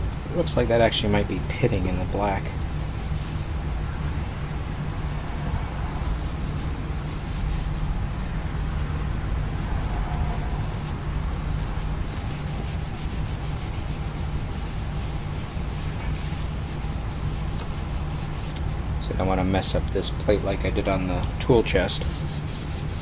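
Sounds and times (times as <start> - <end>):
steady low hum: 0.0 - 23.0
scratchy scrubbing of a plate: 2.6 - 11.0, 11.6 - 18.6, 22.0 - 23.0.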